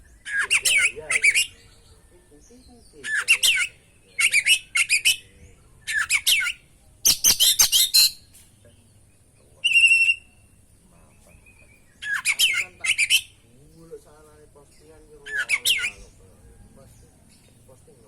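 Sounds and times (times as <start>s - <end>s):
bird chirping song: 0.0s - 18.0s
bird whistled note: 9.7s - 10.4s.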